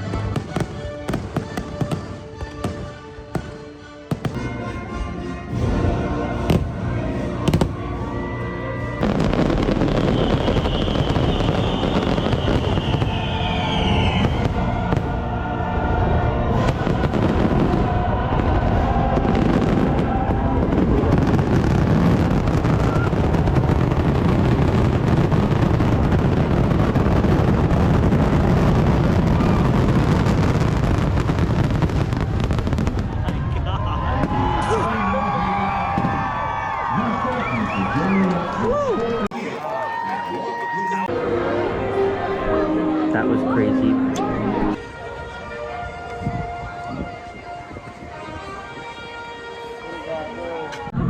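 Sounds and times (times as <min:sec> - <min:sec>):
fireworks bangs: 0:00.0 - 0:15.2, 0:16.1 - 0:38.4
music soundtrack: 0:00.0 - 0:32.8, 0:39.3 - 0:51.0.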